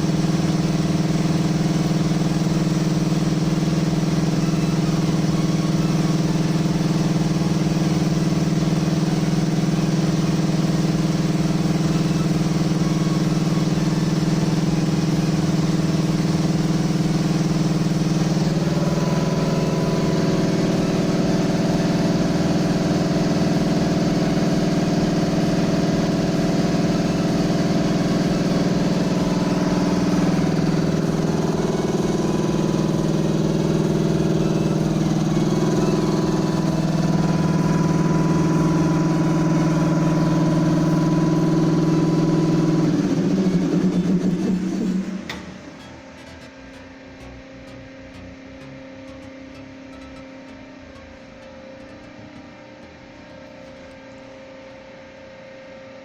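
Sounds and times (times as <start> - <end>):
air compressor pulsing: 0.0 - 56.0
higher hum: 11.8 - 55.8.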